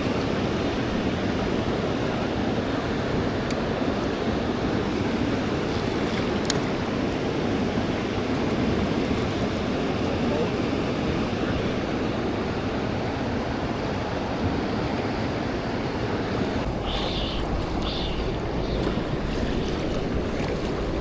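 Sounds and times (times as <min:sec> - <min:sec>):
water noise: 0:00.0 - 0:21.0
wind rumbling on microphone: 0:00.0 - 0:21.0.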